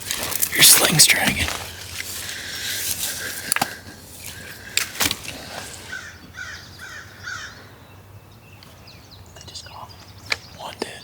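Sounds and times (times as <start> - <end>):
bird calls with harsh notes: 4.2 - 11.0.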